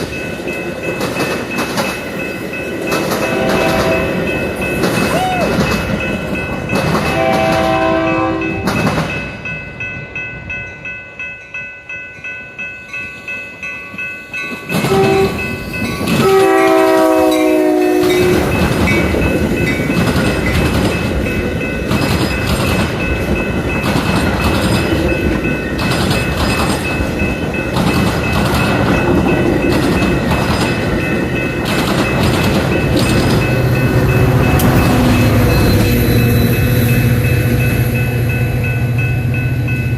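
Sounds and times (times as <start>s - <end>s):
rhythmic clatter of train wheels: 0.0s - 39.9s
rumble of passing train: 0.0s - 39.9s
train horn blast: 3.1s - 4.2s, 7.0s - 8.7s, 14.8s - 15.5s, 16.2s - 18.5s.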